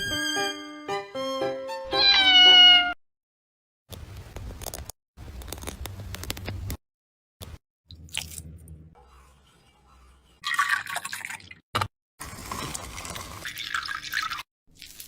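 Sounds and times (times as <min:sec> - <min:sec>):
liquid pouring and splashing: 0:07.9 - 0:08.5, 0:10.4 - 0:15.0.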